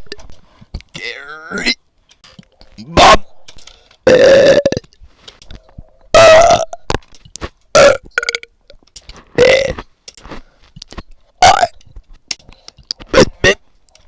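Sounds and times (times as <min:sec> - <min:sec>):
person burping loudly: 0:04.0 - 0:04.9, 0:06.1 - 0:07.0, 0:07.7 - 0:08.5, 0:09.4 - 0:09.8, 0:11.4 - 0:11.8, 0:13.1 - 0:13.6.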